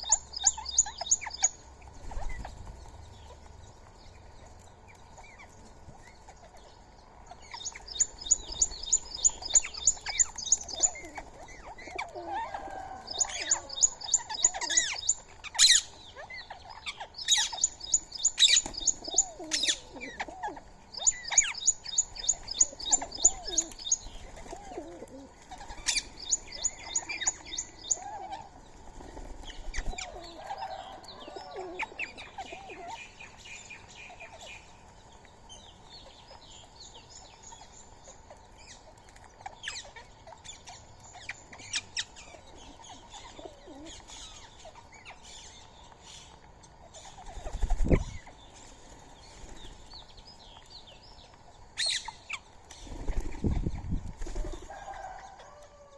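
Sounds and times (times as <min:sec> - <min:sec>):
birds chirping and calling: 0:00.0 - 0:55.9
wings flapping: 0:02.0 - 0:03.0, 0:47.2 - 0:48.2, 0:52.8 - 0:55.0.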